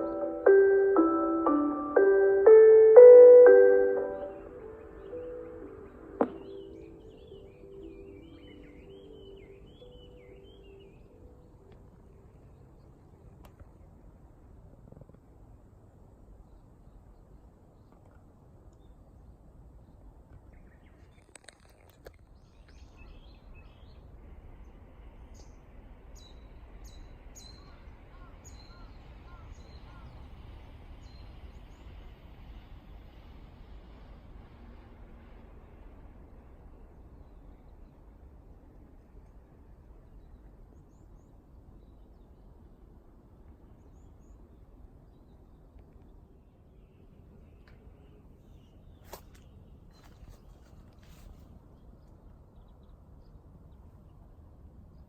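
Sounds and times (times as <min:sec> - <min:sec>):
faint high chirps: 0:00.0 - 0:12.4.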